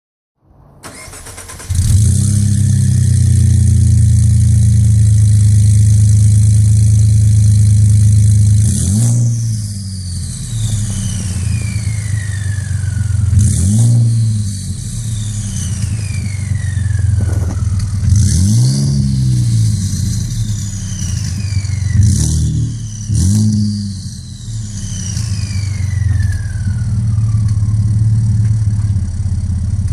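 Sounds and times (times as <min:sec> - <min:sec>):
truck engine revving: 0:00.6 - 0:29.0
turbo whistle: 0:09.3 - 0:27.8.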